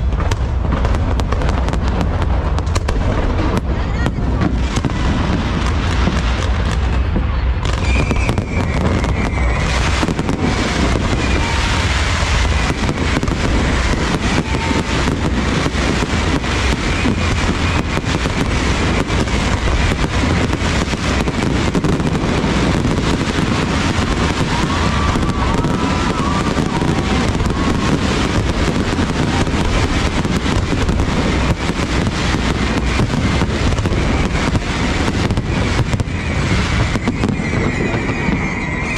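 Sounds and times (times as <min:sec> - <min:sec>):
fireworks bangs and crackles: 0:00.0 - 0:38.9.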